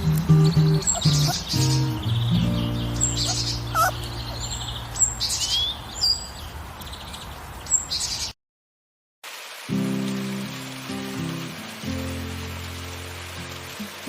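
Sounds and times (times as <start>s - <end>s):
small birds chirping: 0.0s - 8.4s.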